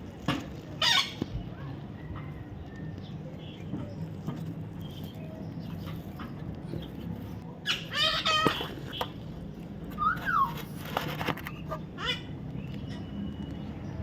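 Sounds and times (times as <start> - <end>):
baby parrot squawking: 0.8 - 1.2, 7.6 - 8.9, 10.0 - 10.8, 11.6 - 12.4.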